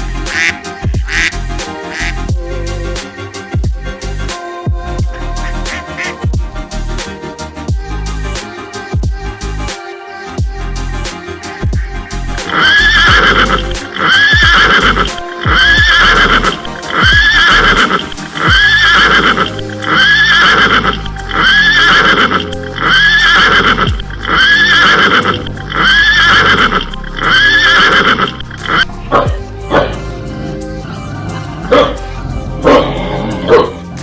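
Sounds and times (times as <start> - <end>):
electronic dance music: 0.0 - 34.0
horse whinny sample: 12.3 - 30.0
deep falling bass hits: 23.8 - 24.4, 28.5 - 30.0.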